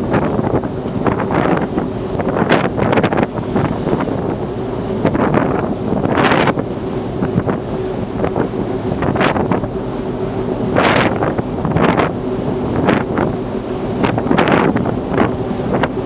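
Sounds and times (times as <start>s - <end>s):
steady low hum: 0.0s - 16.0s
wind buffeting microphone: 0.0s - 16.0s.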